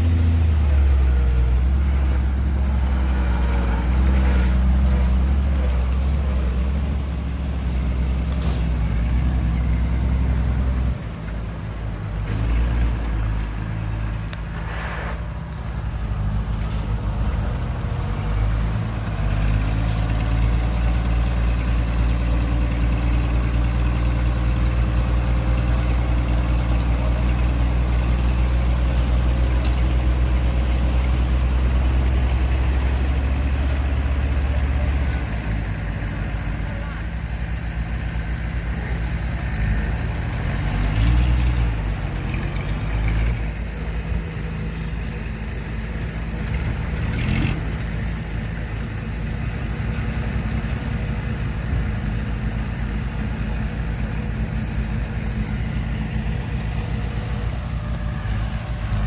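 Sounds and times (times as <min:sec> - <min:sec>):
diesel engine droning: 0:00.0 - 0:59.0
brief hiss: 0:08.3 - 0:08.8, 0:14.4 - 0:15.5.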